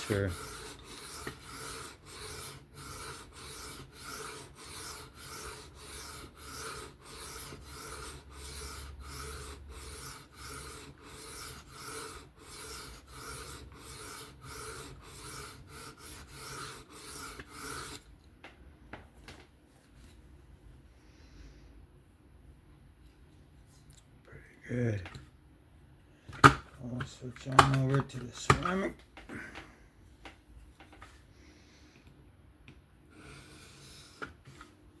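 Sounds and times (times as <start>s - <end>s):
knife rasping on sharpening stone: 0.0s - 18.0s.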